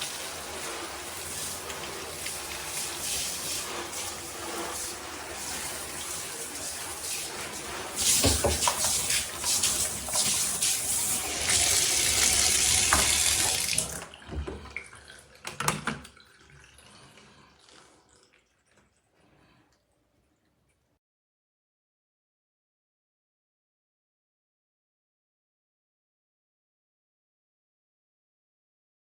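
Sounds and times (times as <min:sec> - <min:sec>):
water splashing into bathtub: 0:00.0 - 0:19.6.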